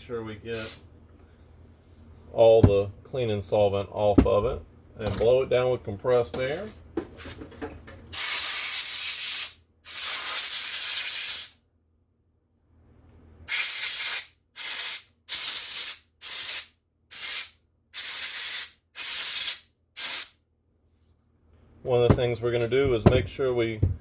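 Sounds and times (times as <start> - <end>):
compressed air blowgun hissing: 0.6 - 0.8, 8.2 - 11.6, 13.5 - 20.4.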